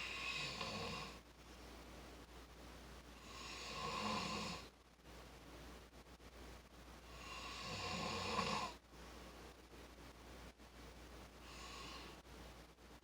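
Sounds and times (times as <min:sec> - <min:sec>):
person snoring: 0:00.0 - 0:01.2, 0:03.2 - 0:04.7, 0:07.1 - 0:08.8.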